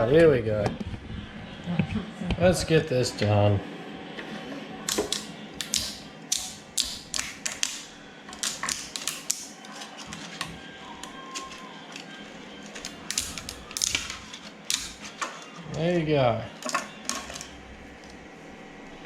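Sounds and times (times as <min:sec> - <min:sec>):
plastic raft snapping clicks: 0:04.9 - 0:09.5.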